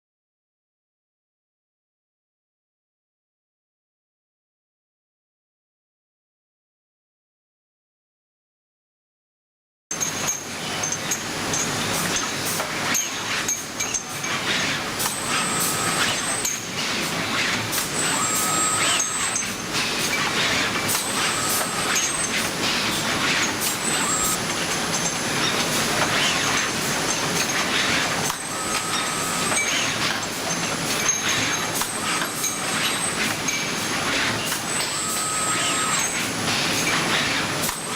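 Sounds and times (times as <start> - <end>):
production line machine noise: 9.9 - 37.9.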